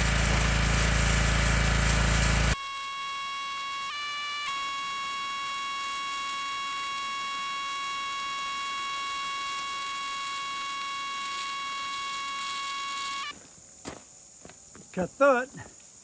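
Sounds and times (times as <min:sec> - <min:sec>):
hiss of water spray: 0:00.0 - 0:02.6
pressure washer whine: 0:00.0 - 0:13.4.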